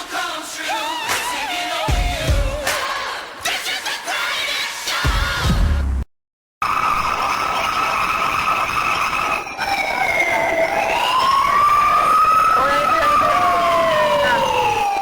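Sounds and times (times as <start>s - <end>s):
siren wailing: 6.6s - 15.0s.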